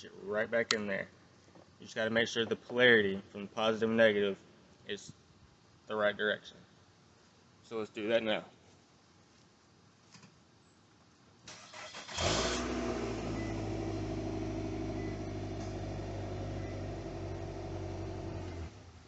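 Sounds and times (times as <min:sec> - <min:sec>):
car engine cranking and idling: 0:11.5 - 0:18.9.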